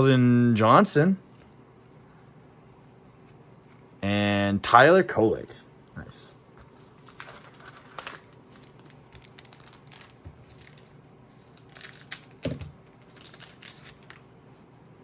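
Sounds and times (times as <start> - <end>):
cards rustling and sliding: 6.6 - 14.2.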